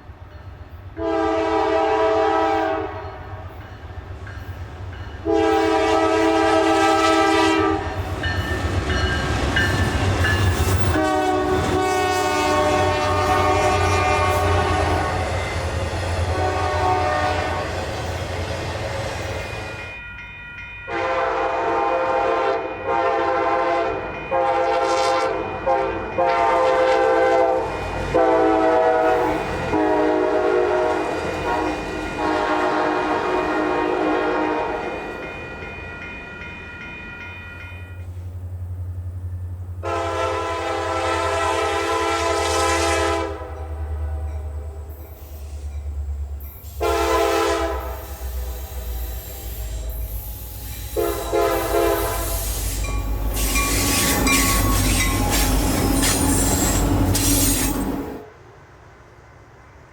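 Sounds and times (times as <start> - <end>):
locomotive air horn blasts: 1.0 - 3.5, 5.2 - 8.1, 10.7 - 15.4, 16.2 - 17.8, 20.9 - 35.0, 39.8 - 44.3, 46.6 - 58.2
low locomotive rumble: 22.1 - 59.9.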